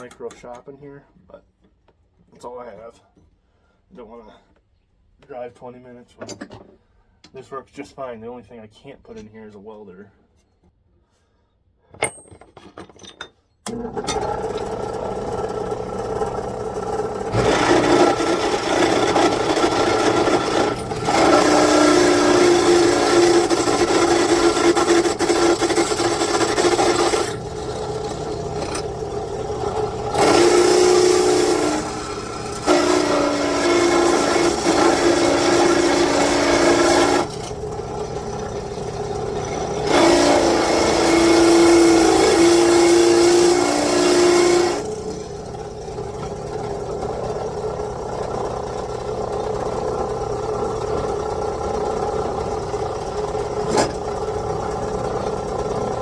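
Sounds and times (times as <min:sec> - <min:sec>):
power tool working metal: 0:13.7 - 0:56.0.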